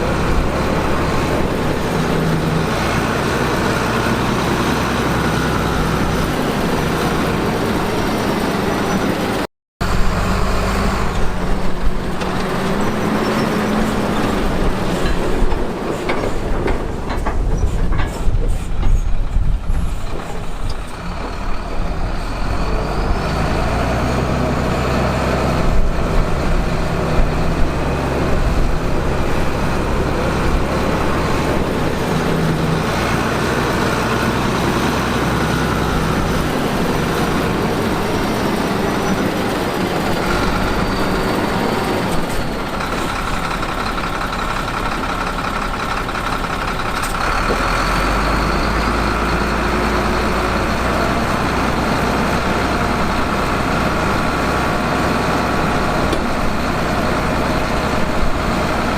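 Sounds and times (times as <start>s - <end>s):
heavy diesel engines rumbling: 0.0s - 58.9s
sharp knocks and clatter: 14.2s - 19.2s.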